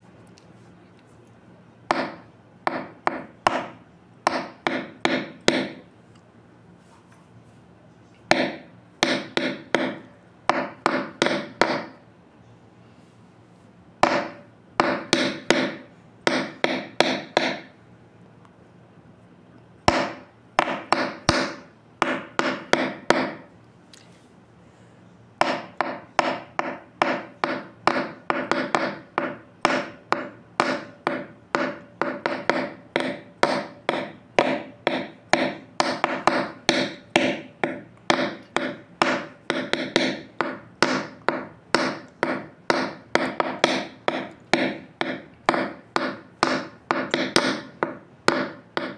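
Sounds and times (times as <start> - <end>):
hammering on wood: 1.9 - 5.9, 8.3 - 12.0, 14.0 - 17.8, 19.9 - 23.5, 25.4 - 48.9.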